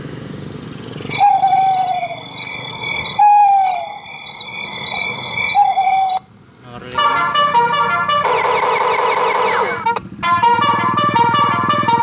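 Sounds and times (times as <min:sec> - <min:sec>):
car horn playing birdsong chirps: 0:01.1 - 0:06.2, 0:10.4 - 0:12.0
high whistles: 0:01.1 - 0:06.2
lower falling whistle: 0:01.1 - 0:06.2.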